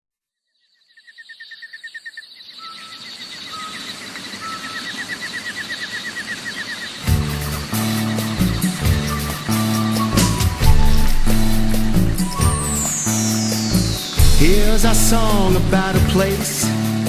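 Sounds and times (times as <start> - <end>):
fast chirping trill: 4.4 - 16.6
song music: 7.1 - 17.0
short whistled notes: 8.8 - 15.8.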